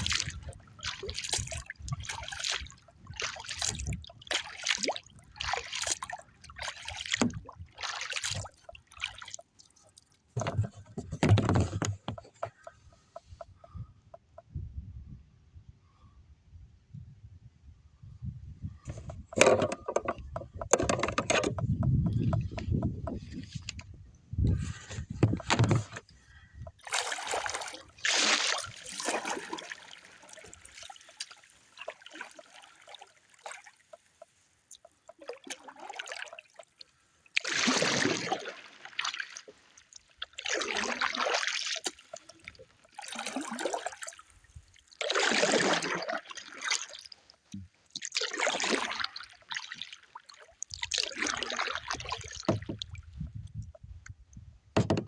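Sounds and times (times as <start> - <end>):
paddle splashing in water: 0.0 - 13.8, 18.9 - 53.7, 54.8 - 55.0
wind buffeting microphone: 13.3 - 26.8, 52.5 - 55.0.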